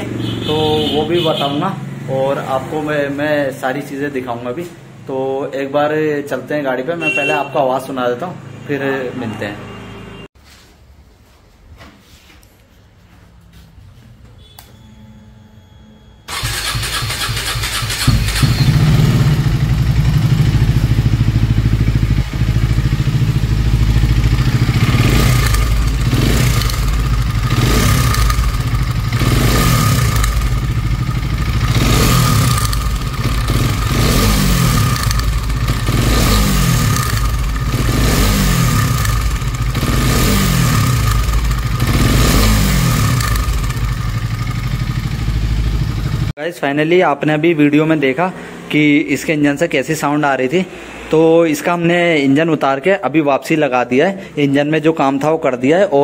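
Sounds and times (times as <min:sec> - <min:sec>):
motorcycle engine running: 0:16.3 - 0:46.3.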